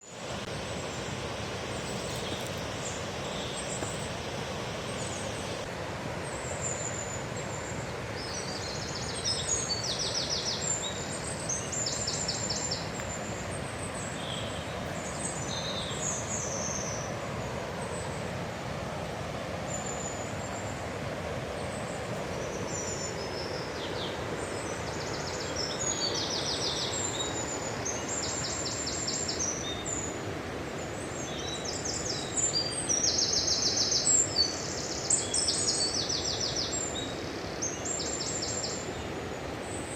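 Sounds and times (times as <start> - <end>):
songbirds chirping and trilling: 0.0 - 5.7, 21.6 - 39.9.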